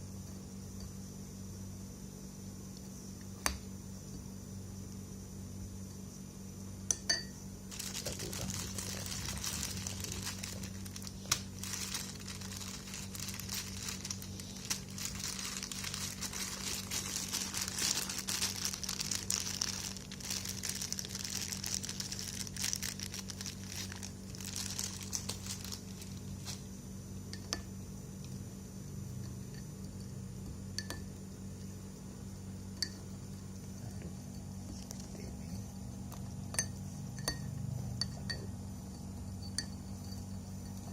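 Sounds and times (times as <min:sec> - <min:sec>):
steady low hum: 0:00.0 - 0:40.9
crinkling and rustling: 0:07.7 - 0:26.7.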